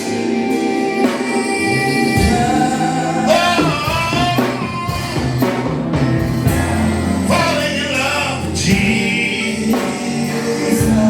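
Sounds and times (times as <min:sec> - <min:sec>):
guitar bass and drums: 0:02.2 - 0:10.0.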